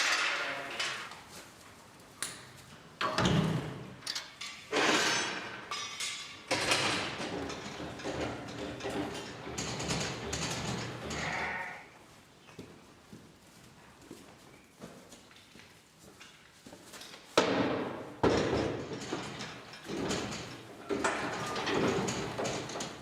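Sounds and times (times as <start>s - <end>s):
metal gates thumping and clanking: 0.0s - 1.2s, 3.0s - 11.8s, 17.4s - 23.0s
metal rattling: 3.0s - 11.6s, 17.8s - 23.0s.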